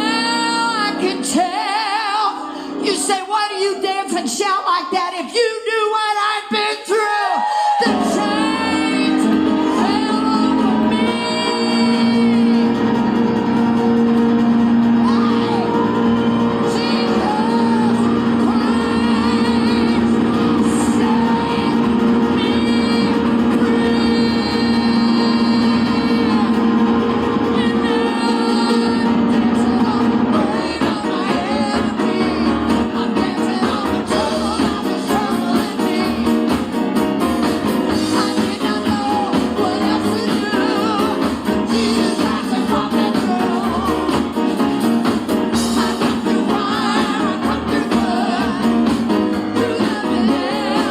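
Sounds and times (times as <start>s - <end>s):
gospel band playing: 0.0s - 5.1s, 7.4s - 50.9s
voices singing and whooping: 6.7s - 36.8s, 45.5s - 50.9s
guitar: 7.7s - 50.9s
sustained held chords: 7.9s - 33.6s.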